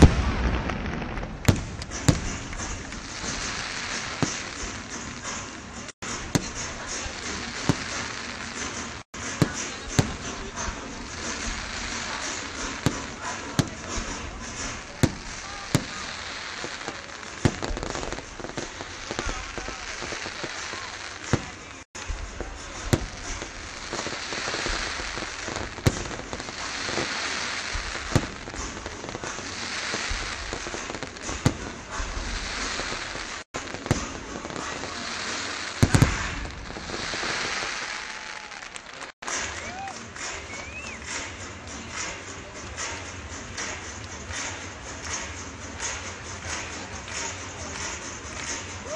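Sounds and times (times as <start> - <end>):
crowd voices: 0.0 - 48.9
fireworks bursting: 0.0 - 48.9.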